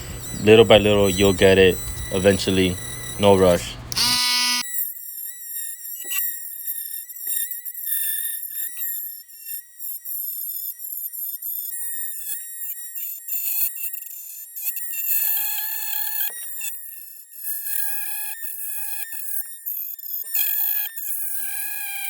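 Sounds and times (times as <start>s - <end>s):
rotary tool grinding plastic: 0.0s - 4.6s.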